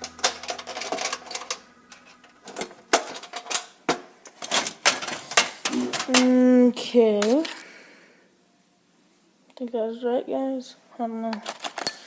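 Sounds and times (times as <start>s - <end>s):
metal hand tools clinking: 11.5s - 12.0s.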